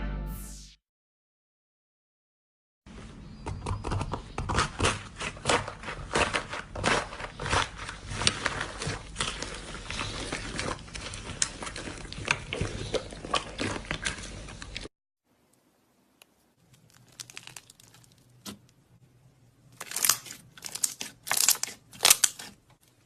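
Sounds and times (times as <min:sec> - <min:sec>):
slime squished by hand: 0:16.6 - 0:18.7.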